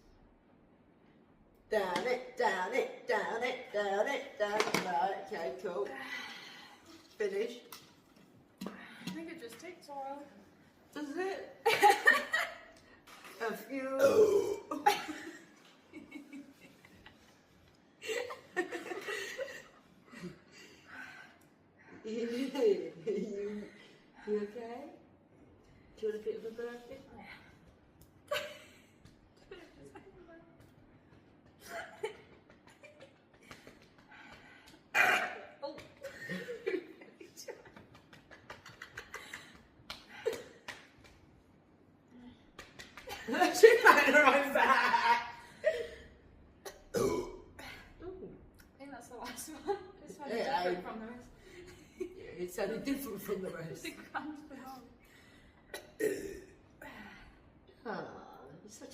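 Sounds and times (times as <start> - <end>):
soft chuckling and giggling: 36.0 - 40.6.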